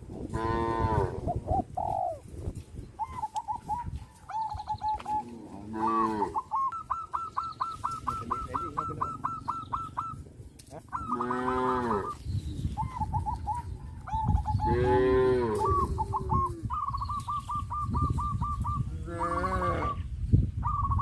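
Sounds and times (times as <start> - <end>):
cows mooing: 0.3 - 1.2, 5.2 - 6.5, 11.1 - 12.2, 14.7 - 16.0, 19.0 - 20.0
bird calling: 2.9 - 21.0.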